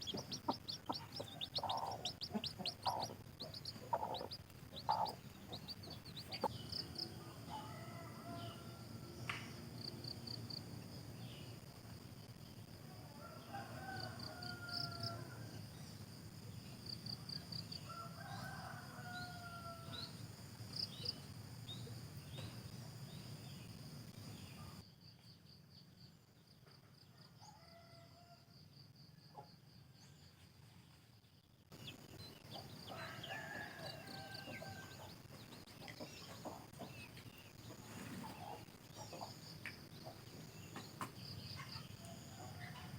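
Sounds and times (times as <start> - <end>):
hens clucking: 0.0 - 6.6
small birds chirping: 0.0 - 8.6, 31.8 - 42.9
crickets chirping: 0.0 - 42.9
rooster crowing: 7.0 - 9.3, 13.1 - 15.5, 17.9 - 20.1, 32.8 - 35.2.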